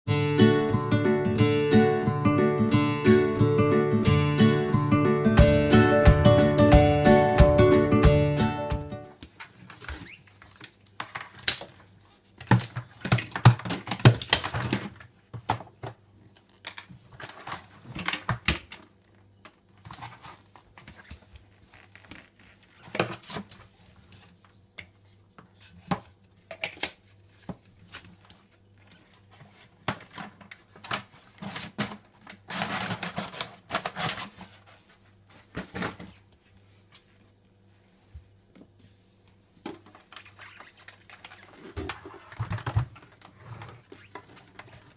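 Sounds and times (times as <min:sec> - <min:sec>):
objects clattering and knocking: 0:41.1 - 0:44.9.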